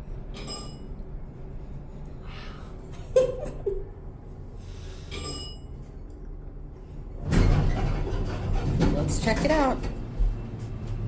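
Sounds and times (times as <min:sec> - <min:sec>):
steady low hum: 0:00.0 - 0:07.4
elevator clunking: 0:07.2 - 0:10.1.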